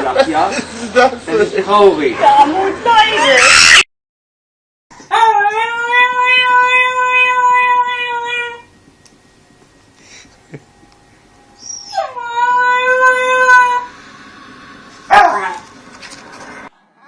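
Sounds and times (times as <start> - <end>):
pet howling: 2.2 - 3.8, 5.1 - 8.7, 11.6 - 14.0, 15.1 - 15.7.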